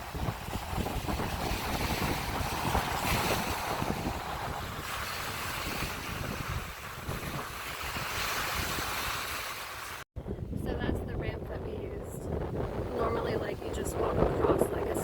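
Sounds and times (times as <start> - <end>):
ocean surf washing onto beach: 0.0 - 10.0
wind buffeting microphone: 0.0 - 15.0.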